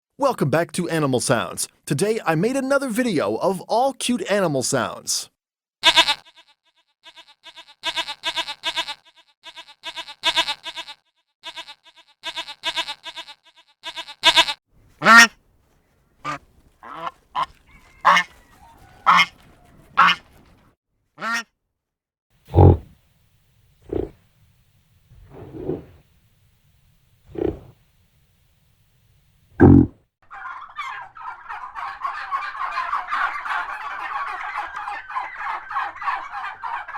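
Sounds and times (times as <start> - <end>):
ducks quacking: 14.8 - 21.4, 22.5 - 22.9, 29.6 - 36.9.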